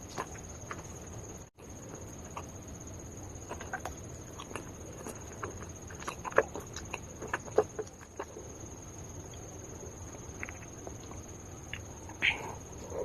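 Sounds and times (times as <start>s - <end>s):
clay crunching while chewed: 3.3s - 8.5s, 10.2s - 11.9s.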